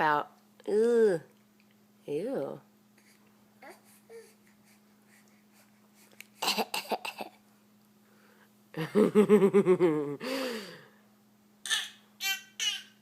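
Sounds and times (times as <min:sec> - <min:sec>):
baby coughing: 0:06.4 - 0:07.4.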